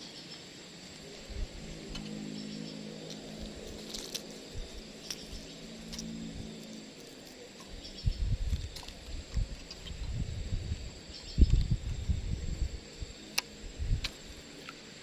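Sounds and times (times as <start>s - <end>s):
faint low hum: 0.0s - 15.0s
insects droning: 0.0s - 15.0s
low rumbling buffeting: 0.9s - 14.4s.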